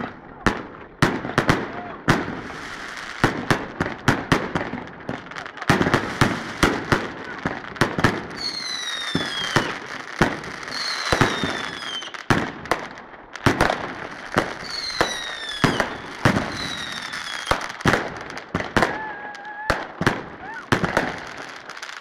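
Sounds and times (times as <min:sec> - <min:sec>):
fireworks bangs: 0:00.0 - 0:22.0
whistling firework shells: 0:08.4 - 0:09.8, 0:10.7 - 0:12.2, 0:14.6 - 0:17.9.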